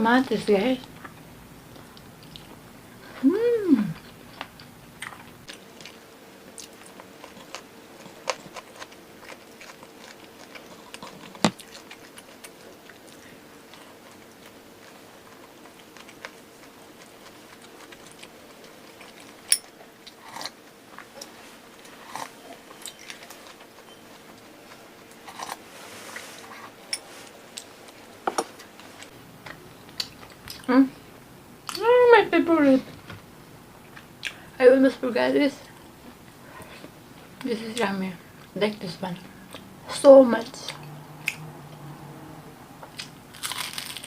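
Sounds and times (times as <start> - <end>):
faint steady hum: 0.0 - 44.0
chewing and biting food: 4.3 - 24.5, 42.8 - 44.0
sharp clicks and crunches: 43.0 - 44.0.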